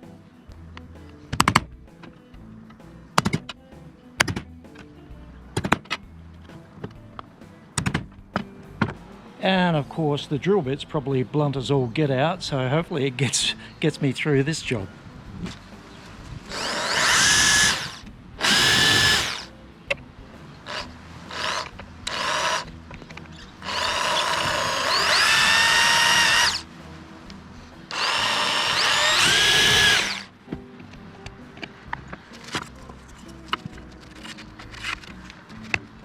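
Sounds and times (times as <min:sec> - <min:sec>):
electric drill boring plastic: 0:16.5 - 0:19.5, 0:20.7 - 0:26.6, 0:27.9 - 0:30.3.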